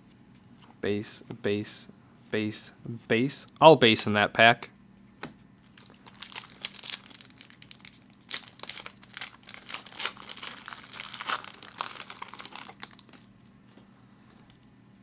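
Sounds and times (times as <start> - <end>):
foil wrapper tearing and crinkling: 5.7 - 13.4.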